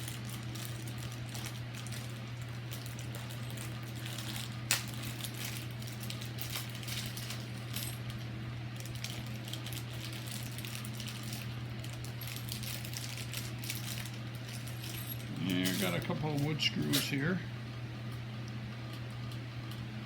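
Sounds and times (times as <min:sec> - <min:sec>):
steady low hum: 0:00.0 - 0:20.0.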